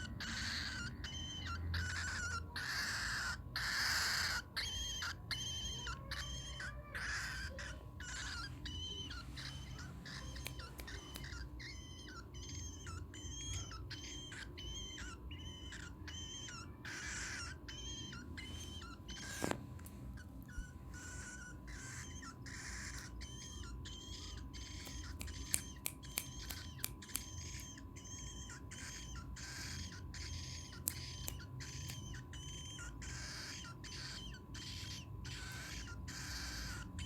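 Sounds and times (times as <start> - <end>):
cockatiel chirping: 0.0 - 37.0
sharp clicks: 10.1 - 11.7, 24.7 - 27.8, 30.7 - 32.1.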